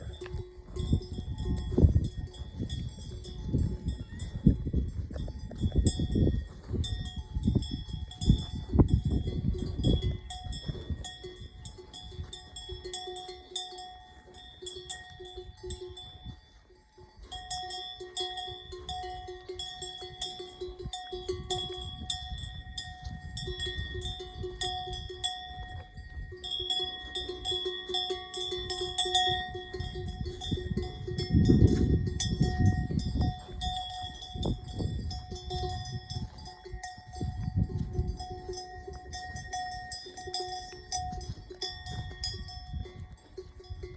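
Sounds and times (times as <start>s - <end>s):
cattle bells ringing: 0.0s - 43.9s.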